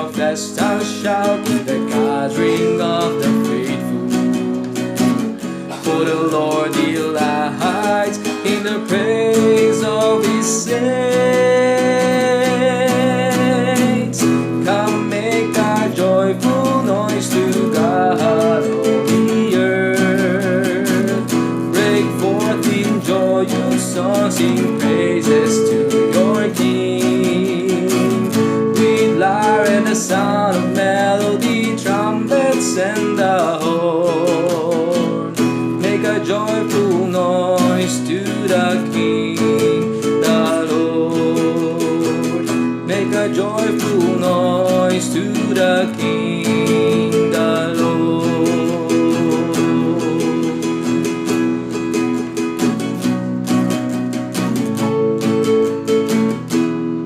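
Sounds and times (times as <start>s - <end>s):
acoustic guitar strumming: 0.0s - 57.0s.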